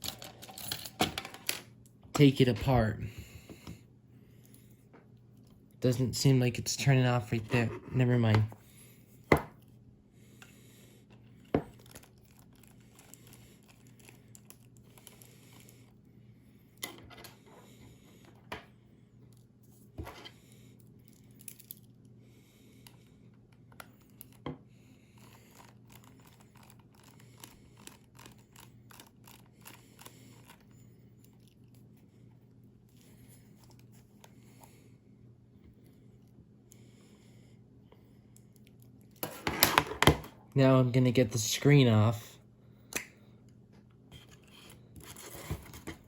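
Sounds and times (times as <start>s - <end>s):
steady low hum: 0.0s - 39.6s, 40.2s - 46.0s
tools handled on work surface: 20.0s - 20.3s, 39.2s - 40.3s.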